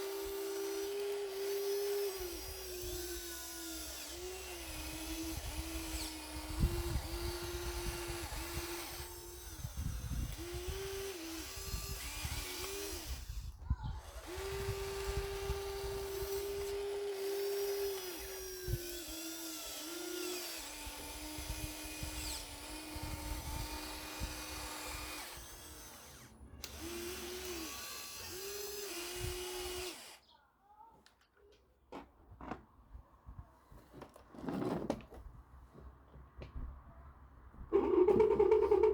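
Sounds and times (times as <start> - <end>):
small electric motors whining: 0.0 - 30.2.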